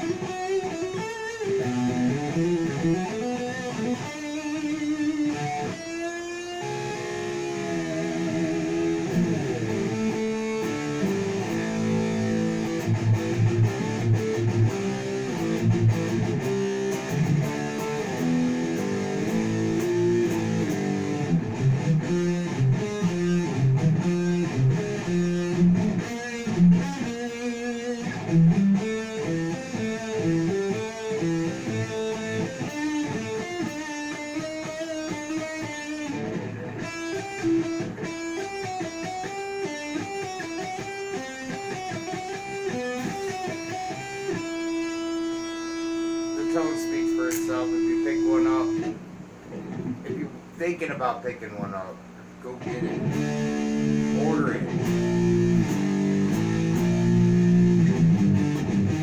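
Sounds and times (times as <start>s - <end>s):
electric guitar playing: 0.0s - 50.5s, 52.5s - 59.0s.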